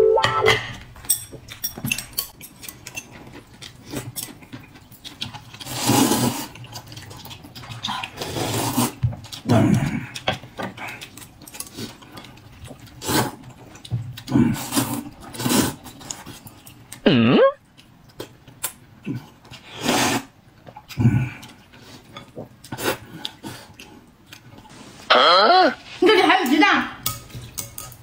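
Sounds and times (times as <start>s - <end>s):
handling and eating food: 0.0s - 28.0s
person saying oh: 17.1s - 17.6s, 25.1s - 25.8s.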